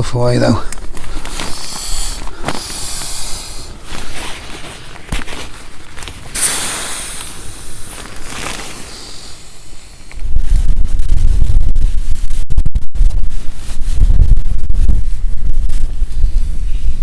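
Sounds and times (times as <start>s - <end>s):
fabric rustling and scraping: 0.0s - 12.4s
wind buffeting microphone: 9.0s - 17.0s.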